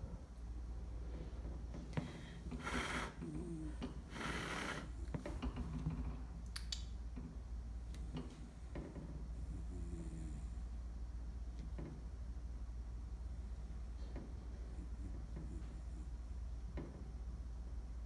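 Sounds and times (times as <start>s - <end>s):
dog snoring: 1.9s - 6.1s, 9.3s - 10.8s, 14.7s - 16.2s.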